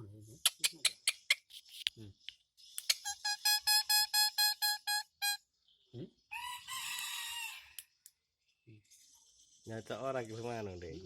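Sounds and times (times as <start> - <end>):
bird mimicking electronic beeps: 3.0 - 5.4.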